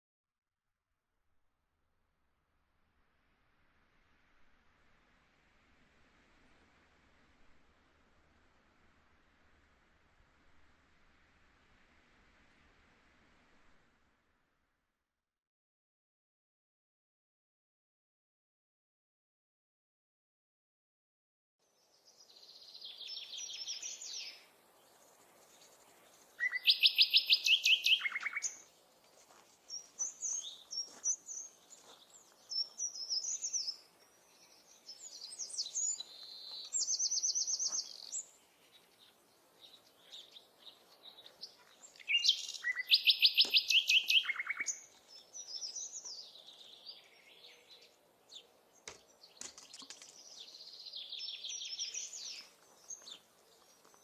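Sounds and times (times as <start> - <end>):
songbirds chirping: 21.6 - 54.0
fast bird trill: 42.1 - 44.8.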